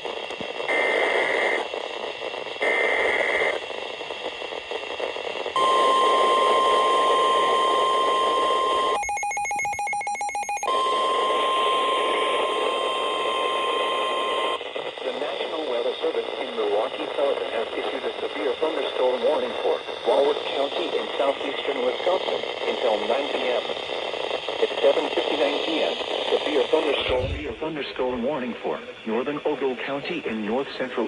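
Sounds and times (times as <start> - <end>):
radio hiss: 0.0 - 9.0, 10.7 - 31.0
high-pitched alarm tone: 5.6 - 14.6.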